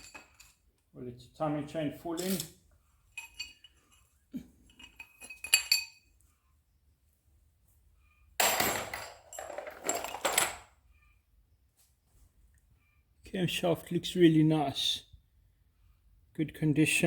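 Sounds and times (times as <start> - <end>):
metal engine parts clinking: 0.0 - 0.6, 2.1 - 2.5, 3.1 - 6.1, 8.4 - 10.7
metallic rattling scrape: 2.1 - 2.6.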